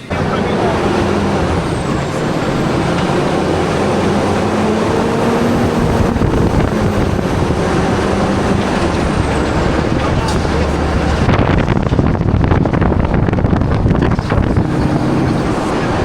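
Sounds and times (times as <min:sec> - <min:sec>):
motor vehicle rumble: 0:00.0 - 0:16.0.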